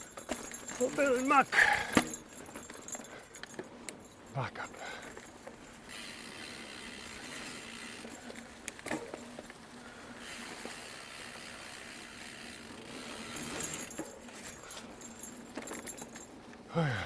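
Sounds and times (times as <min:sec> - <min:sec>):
bike drivetrain rattling and clicking: 0:00.0 - 0:16.6
bike tyres on dirt trail: 0:00.0 - 0:17.0
bike knocking over bumps: 0:00.2 - 0:02.7.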